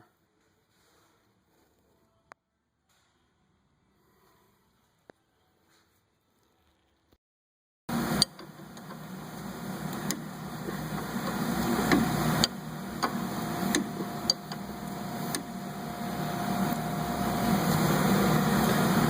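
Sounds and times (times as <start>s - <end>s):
steady mechanical hum: 7.9s - 19.0s.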